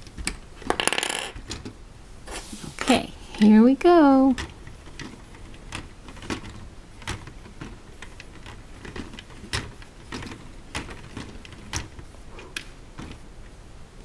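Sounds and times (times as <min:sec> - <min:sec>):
plastic gears clicking: 0:04.3 - 0:13.2.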